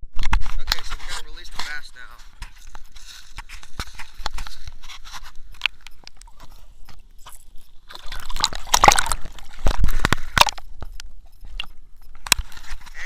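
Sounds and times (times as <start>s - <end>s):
water sloshing and splashing: 7.2s - 10.6s.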